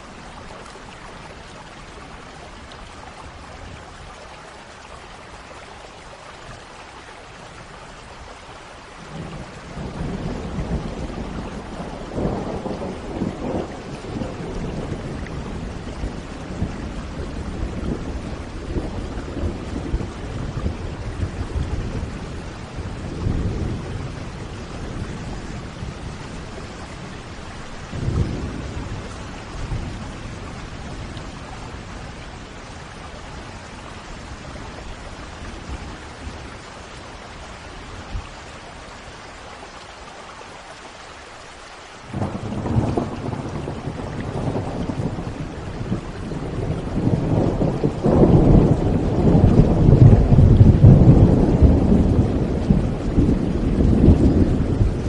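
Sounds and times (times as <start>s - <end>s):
steady rain: 0.0s - 55.0s
rolling thunder: 9.1s - 32.2s, 42.1s - 55.0s.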